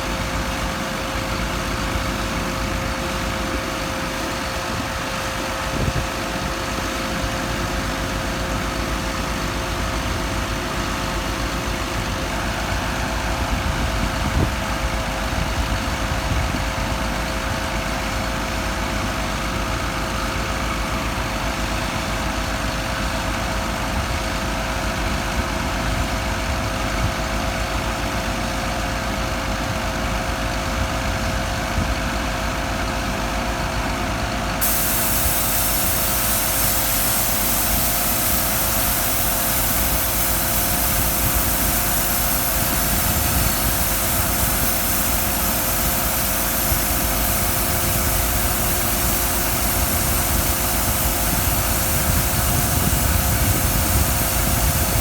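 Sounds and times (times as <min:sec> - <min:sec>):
engine idling: 0:33.7 - 0:55.0
high hiss: 0:34.6 - 0:55.0.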